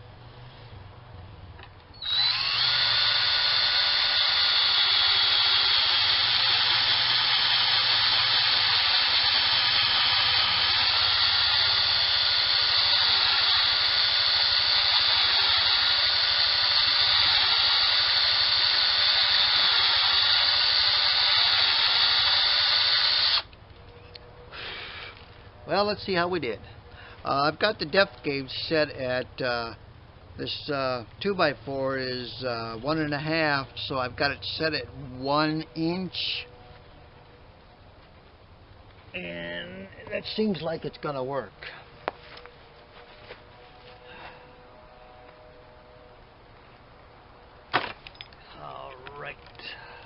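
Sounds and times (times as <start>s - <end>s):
power drill boring into wood: 2.0s - 23.5s.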